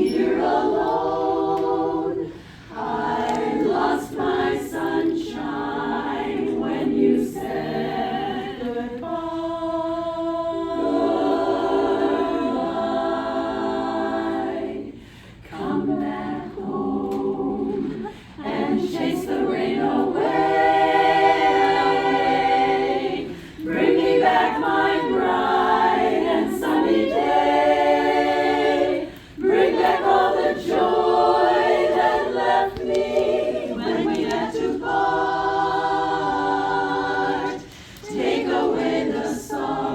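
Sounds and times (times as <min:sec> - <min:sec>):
choir singing in harmony: 0:00.0 - 0:39.9
singers breathing: 0:02.3 - 0:02.8, 0:14.9 - 0:15.5, 0:18.0 - 0:18.4, 0:23.3 - 0:23.6, 0:29.1 - 0:29.4, 0:37.7 - 0:38.1.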